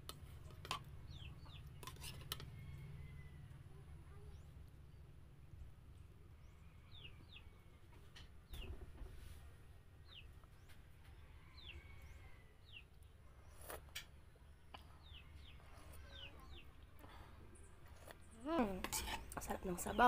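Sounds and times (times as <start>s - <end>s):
faint bird chirps: 10.0s - 18.6s.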